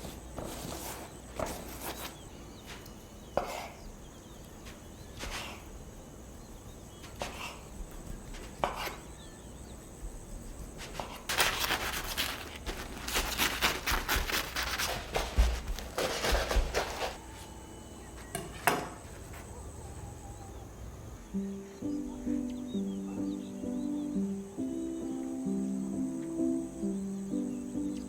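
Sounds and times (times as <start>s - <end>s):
bread crust crackling: 10.7s - 17.3s.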